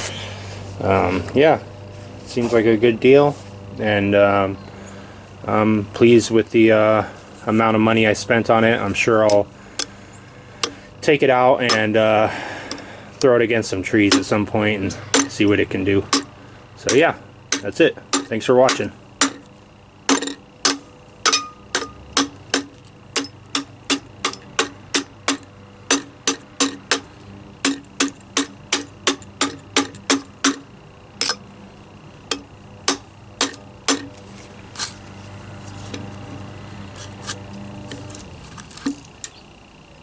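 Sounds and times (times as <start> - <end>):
sharp ticking clicks: 15.1 - 34.2.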